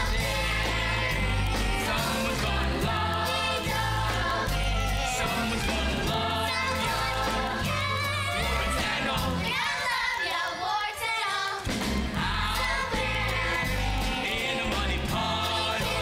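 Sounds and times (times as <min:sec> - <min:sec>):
steady bass line: 0:00.0 - 0:09.5, 0:11.9 - 0:16.0
instrumental accompaniment: 0:00.0 - 0:10.3
group of voices singing: 0:00.0 - 0:16.0.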